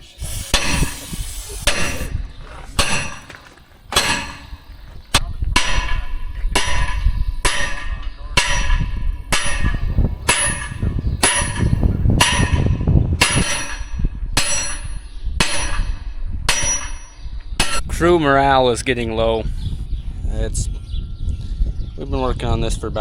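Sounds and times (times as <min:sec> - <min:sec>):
sledgehammer striking metal shaft: 0:00.5 - 0:00.9, 0:01.6 - 0:02.2, 0:02.8 - 0:17.8.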